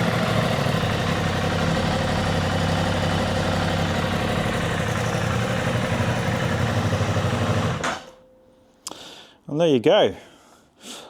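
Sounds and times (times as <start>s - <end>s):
motorcycle engine idling: 0.0s - 8.0s.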